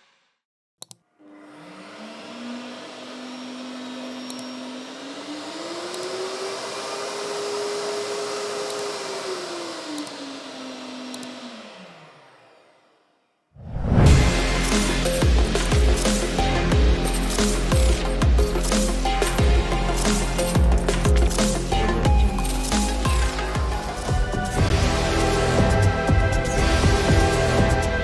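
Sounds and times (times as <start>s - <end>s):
vacuum cleaner motor whining: 1.2s - 13.0s.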